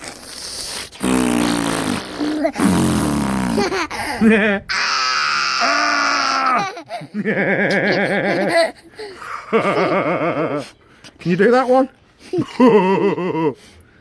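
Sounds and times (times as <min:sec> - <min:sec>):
person imitating bird calls: 0:00.0 - 0:06.8.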